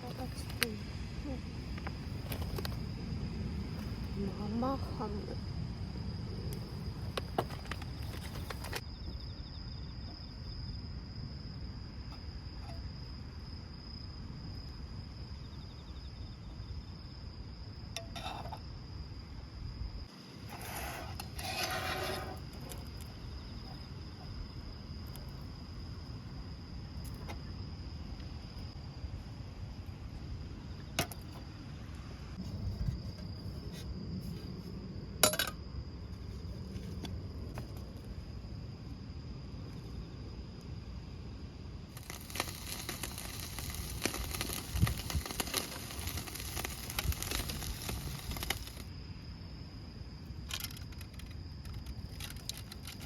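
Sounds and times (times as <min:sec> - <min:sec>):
crickets trilling: 0:00.0 - 0:53.0
crackling clattering noise: 0:01.7 - 0:02.9, 0:07.1 - 0:08.8, 0:41.9 - 0:48.9, 0:50.4 - 0:53.0.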